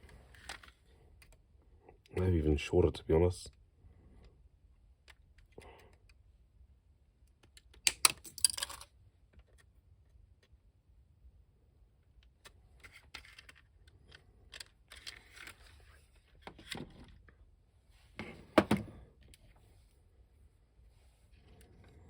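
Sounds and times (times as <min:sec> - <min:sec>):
plastic parts and tools handled: 0:00.0 - 0:02.3, 0:07.3 - 0:10.6, 0:12.0 - 0:17.5.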